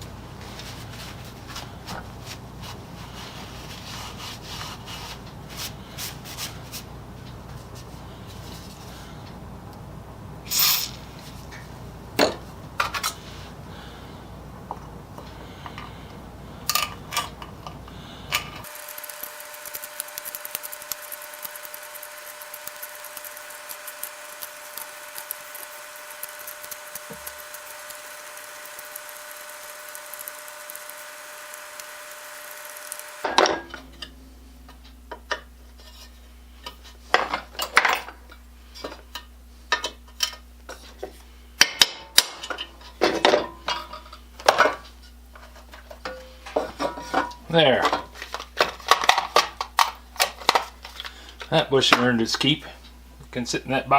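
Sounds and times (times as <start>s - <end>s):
electric drill running: 18.6s - 33.6s.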